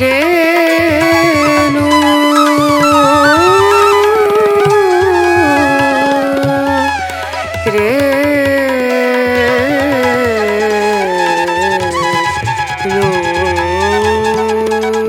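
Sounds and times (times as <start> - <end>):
sliding instrumental melody: 1.4 - 8.4.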